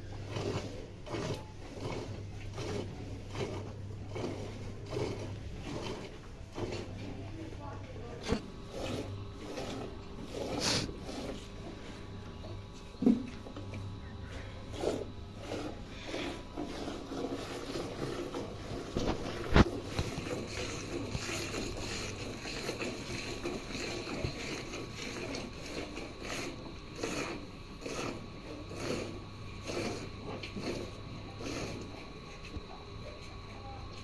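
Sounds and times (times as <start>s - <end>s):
milk squirting into a pail: 0.2s - 7.3s, 13.0s - 32.7s.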